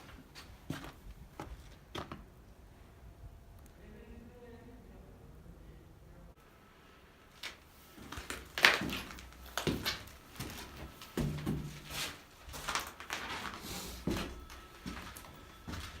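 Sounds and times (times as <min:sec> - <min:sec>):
footsteps on debris: 0:07.4 - 0:16.0.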